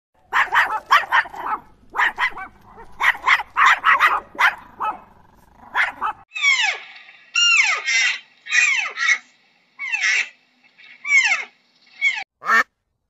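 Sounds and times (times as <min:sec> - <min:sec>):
dog barking: 0:00.2 - 0:06.2
animal call falling in pitch: 0:06.3 - 0:09.2.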